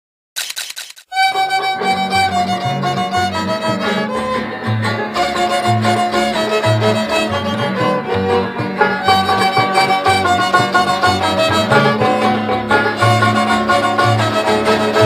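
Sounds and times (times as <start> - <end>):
fiddle melody: 1.1 - 15.0
plucked strings: 1.1 - 15.0
steady bass line: 1.6 - 15.0.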